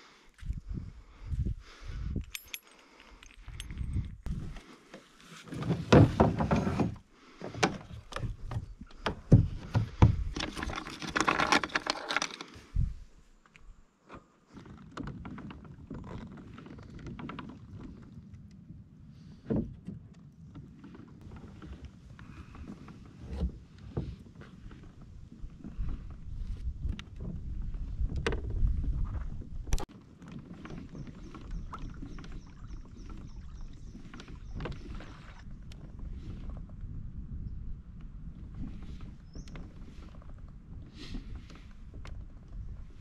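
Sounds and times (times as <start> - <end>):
fishing gear clattering: 2.1 - 4.2, 10.1 - 12.7.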